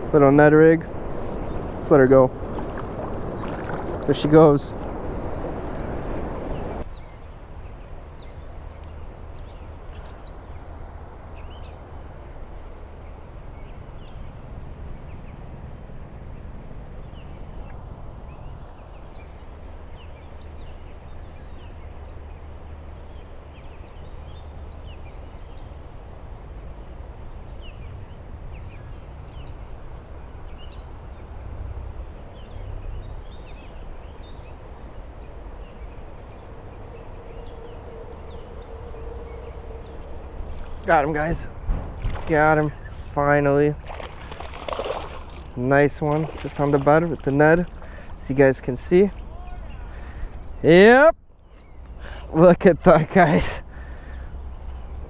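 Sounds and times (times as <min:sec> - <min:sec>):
small birds chirping: 0:01.2 - 0:12.4, 0:27.5 - 0:55.0
low outdoor rumble: 0:24.1 - 0:55.0.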